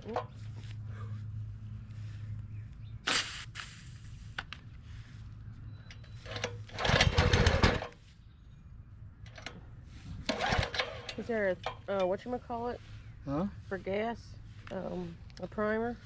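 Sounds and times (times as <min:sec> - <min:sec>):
small gas engine stalling: 0:06.0 - 0:08.0, 0:10.2 - 0:11.9.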